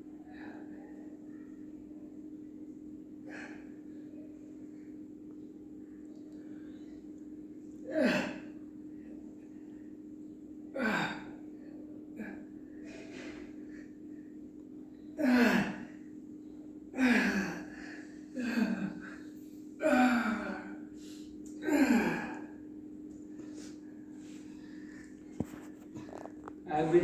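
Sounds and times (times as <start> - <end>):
man groaning with strain: 17.0 - 17.7, 19.8 - 20.7, 21.6 - 22.5.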